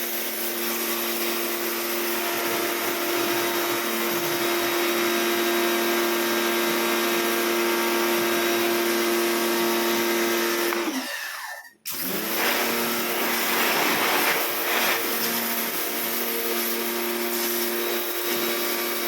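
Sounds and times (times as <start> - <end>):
pressure washer motor hum: 0.1 - 19.0
water spray hiss: 12.4 - 16.7.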